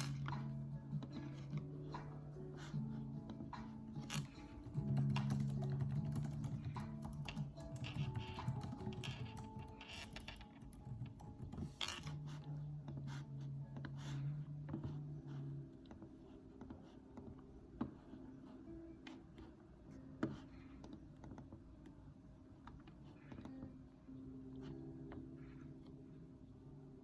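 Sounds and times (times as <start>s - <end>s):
computer keyboard keystrokes: 4.2s - 12.0s.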